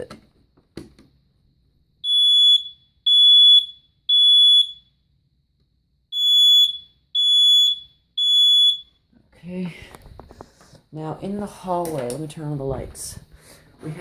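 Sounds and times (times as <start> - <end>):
smoke alarm beeping: 2.0 - 5.0, 6.1 - 9.1.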